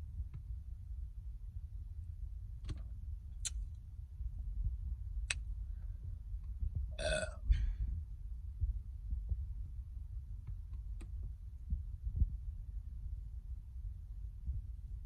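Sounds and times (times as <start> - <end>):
wind rumble on microphone: 0.0 - 15.0
woman burping: 7.0 - 7.4.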